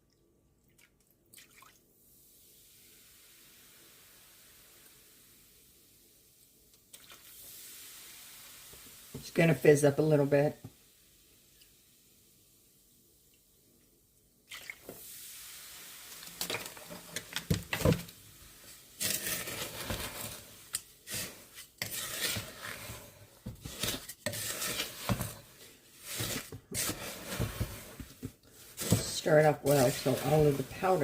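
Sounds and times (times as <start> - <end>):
fizzing hiss: 2.0 - 13.5, 14.4 - 21.8, 24.6 - 31.0
wooden spoon scraping a bowl: 19.0 - 31.0.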